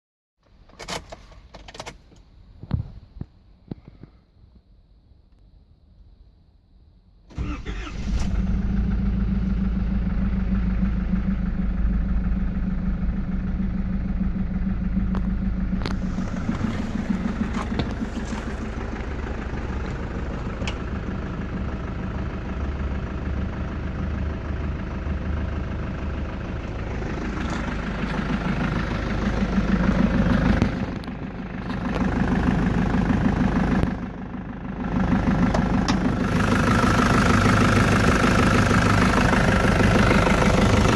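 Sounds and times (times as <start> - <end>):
engine starting and running: 7.3 - 40.9
engine revving: 7.4 - 19.9, 34.9 - 40.9
engine knocking: 9.0 - 40.9.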